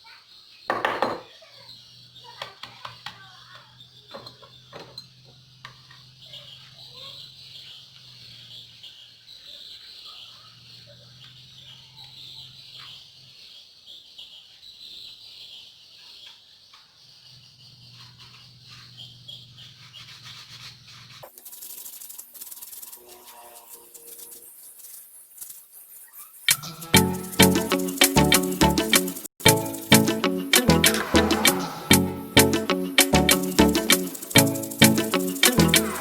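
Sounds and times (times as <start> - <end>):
crickets chirping: 32.8 - 36.0.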